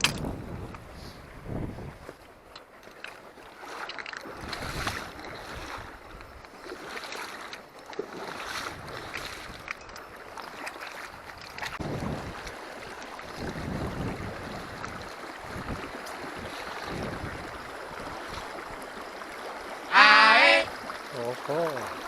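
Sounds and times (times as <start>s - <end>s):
wind buffeting microphone: 0.0s - 2.3s, 4.2s - 6.5s, 11.2s - 18.8s
river water rushing: 2.3s - 11.3s, 12.3s - 22.0s.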